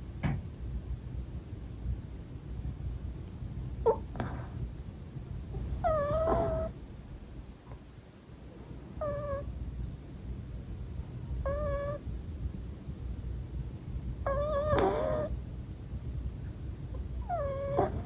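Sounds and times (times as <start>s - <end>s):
cat snoring: 5.8s - 6.7s, 14.3s - 15.3s, 17.2s - 18.0s.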